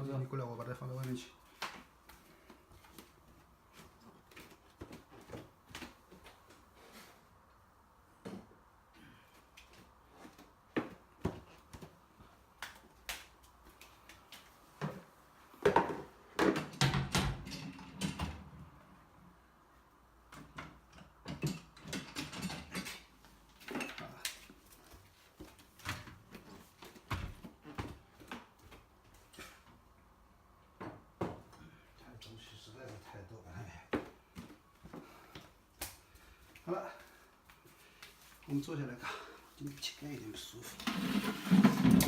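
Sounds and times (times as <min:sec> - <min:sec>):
household objects clattering: 0:15.6 - 0:18.5, 0:20.4 - 0:24.2, 0:40.7 - 0:42.0.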